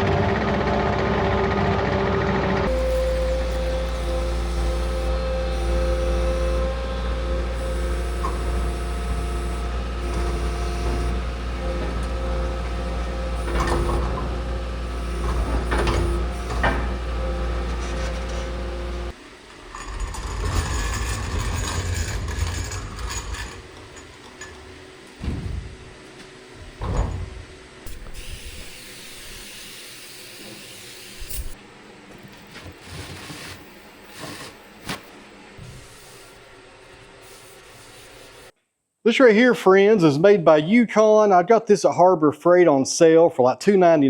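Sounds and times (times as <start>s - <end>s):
clunks: 6.6s - 27.6s.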